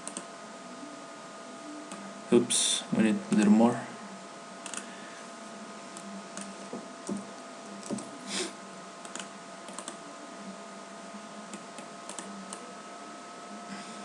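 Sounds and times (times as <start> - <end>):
electrical hum: 0.0 - 14.0
keyboard keys clicking: 9.0 - 10.0.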